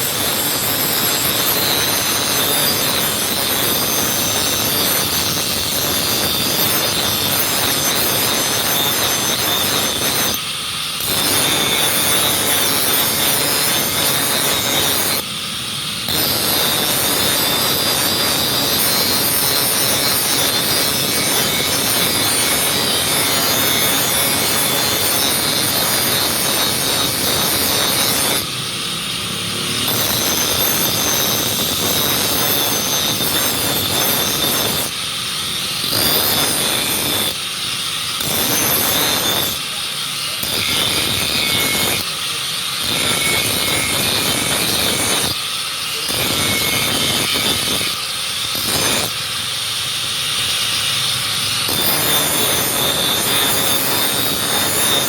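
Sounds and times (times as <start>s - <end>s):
knife grinding on sharpening stone: 16.0s - 55.0s.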